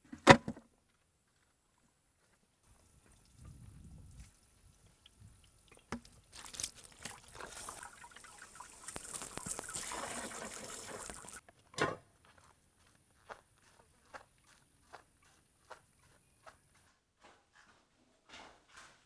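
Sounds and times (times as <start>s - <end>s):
water running and splashing: 2.7s - 11.4s.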